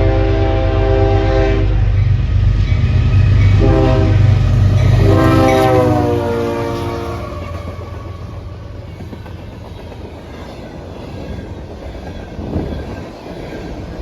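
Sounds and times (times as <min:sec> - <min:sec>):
locomotive air horn blasts: 0:00.0 - 0:02.0, 0:03.5 - 0:08.6.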